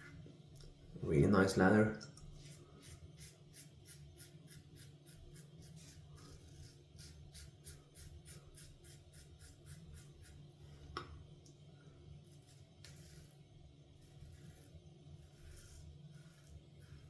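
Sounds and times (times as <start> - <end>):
razor scraping stubble: 2.4 - 10.4, 14.0 - 17.0.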